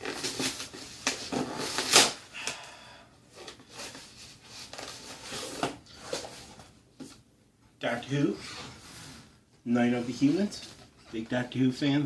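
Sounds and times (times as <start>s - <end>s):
packaging rustling and scraping: 0.0s - 2.2s, 3.3s - 6.8s.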